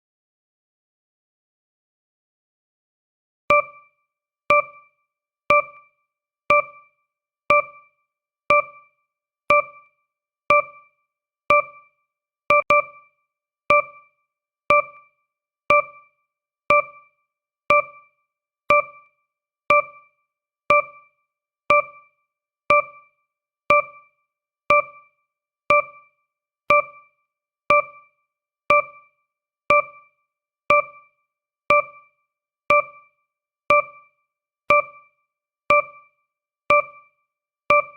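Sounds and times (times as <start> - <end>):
countdown timer beeps: 3.5 - 3.9, 4.5 - 4.9, 5.5 - 5.9, 6.5 - 6.9, 7.5 - 7.9, 8.5 - 8.9, 9.5 - 9.9, 10.5 - 10.9, 11.5 - 11.9, 12.5 - 13.1, 13.7 - 14.1, 14.7 - 15.1, 15.7 - 16.1, 16.7 - 17.1, 17.7 - 18.1, 18.7 - 19.1, 19.7 - 20.1, 20.7 - 21.1, 21.7 - 22.1, 22.7 - 23.1, 23.7 - 24.1, 24.7 - 25.1, 25.7 - 26.1, 26.7 - 27.1, 27.7 - 28.1, 28.7 - 29.1, 29.7 - 30.1, 30.7 - 31.1, 31.7 - 32.1, 32.7 - 33.1, 33.7 - 34.1, 34.7 - 35.1, 35.7 - 36.1, 36.7 - 37.1.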